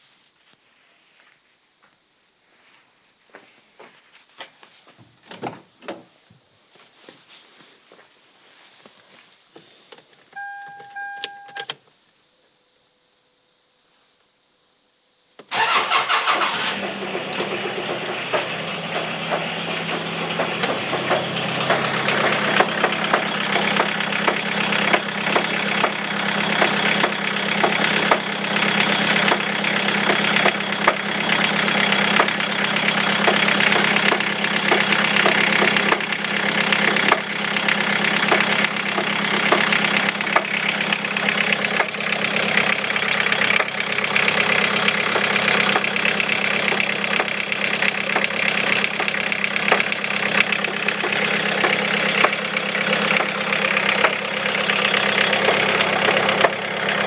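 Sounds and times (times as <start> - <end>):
diesel engine starting and idling: 15.4 - 57.0
rapid engine knock: 17.6 - 28.6, 29.2 - 57.0.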